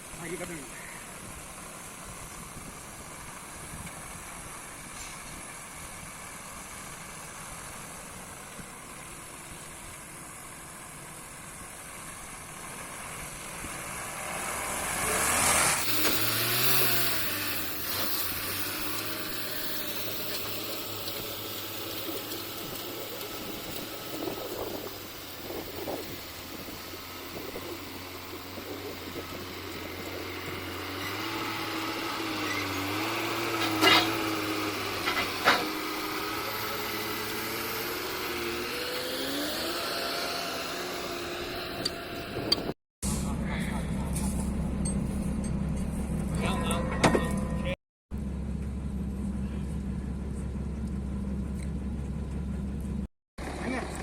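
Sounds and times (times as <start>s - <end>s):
drilling rig engine running: 0.0s - 54.0s.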